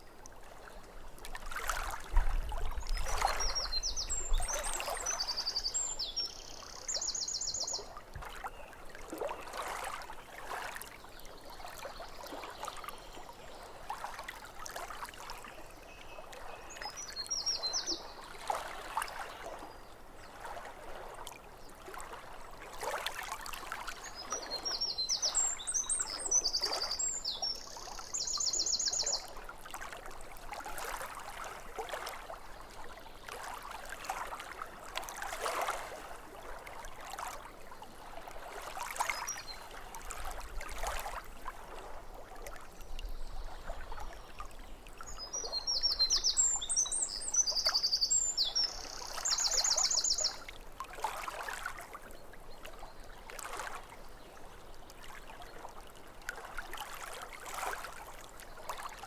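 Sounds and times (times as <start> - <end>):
water lapping at shore: 0.0 - 59.0
songbird singing with trill: 2.9 - 7.9, 15.6 - 18.1, 24.2 - 29.3, 45.1 - 50.5.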